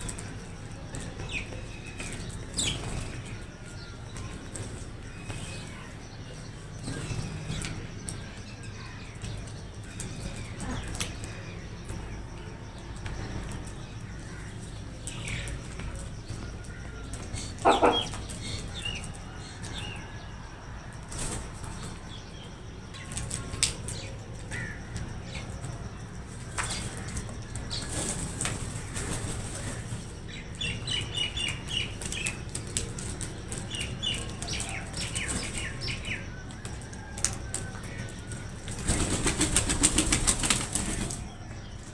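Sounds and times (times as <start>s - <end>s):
crows scuffling over food: 0.0s - 41.9s
crow cawing harshly: 17.6s - 18.1s
crows flapping wings: 20.9s - 41.6s.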